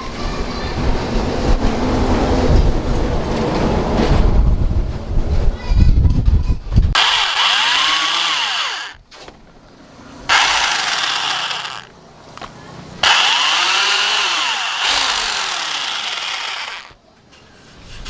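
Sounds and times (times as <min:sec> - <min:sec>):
power tool grinding: 0:07.0 - 0:09.0, 0:10.3 - 0:11.9, 0:13.0 - 0:17.0.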